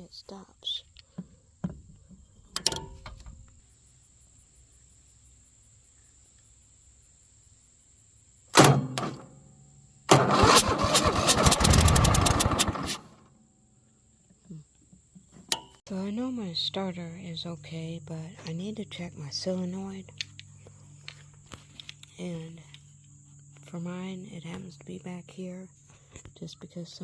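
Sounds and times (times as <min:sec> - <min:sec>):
starter motor cranking: 0:10.1 - 0:13.1
mower engine running: 0:10.1 - 0:13.3.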